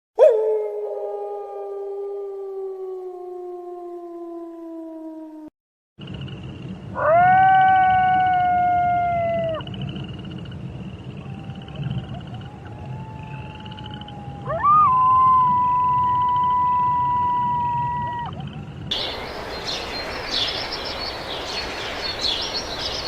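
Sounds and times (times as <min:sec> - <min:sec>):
wolves howling: 0:00.2 - 0:05.5
chorus of fast pulsing calls: 0:18.9 - 0:23.0.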